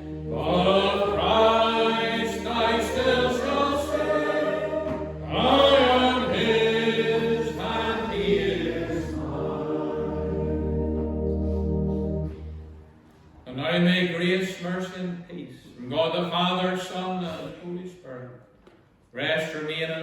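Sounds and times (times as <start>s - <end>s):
congregation singing a hymn: 0.0s - 12.3s
sustained accompanying chords: 0.0s - 13.1s.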